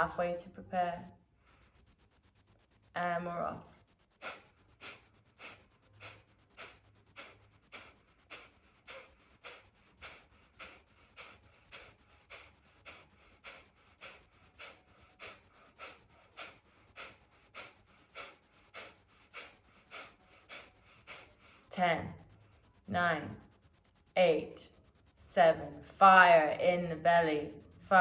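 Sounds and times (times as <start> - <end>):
forceful nasal exhales: 4.2 - 21.7.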